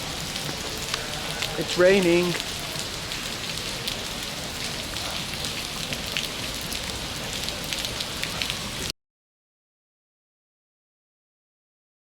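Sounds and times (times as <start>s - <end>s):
steady rain falling: 0.0s - 8.9s.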